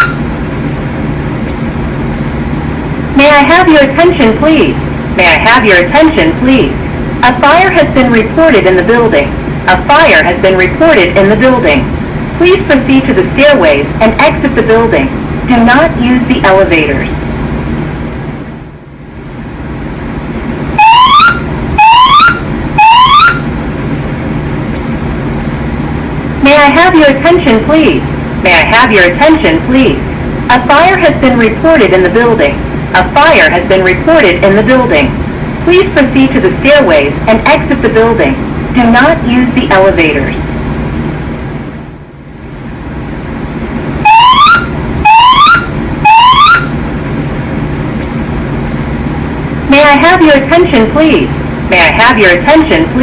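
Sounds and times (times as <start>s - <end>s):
fire alarm whoop tones: 0.0s - 0.4s, 20.7s - 23.6s, 44.0s - 46.8s
steady low hum: 0.0s - 53.0s.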